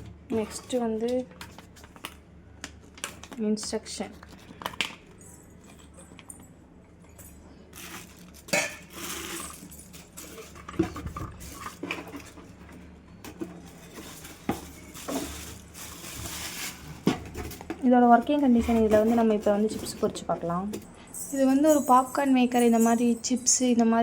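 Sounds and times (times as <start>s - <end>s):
packaging rustling: 13.6s - 17.7s.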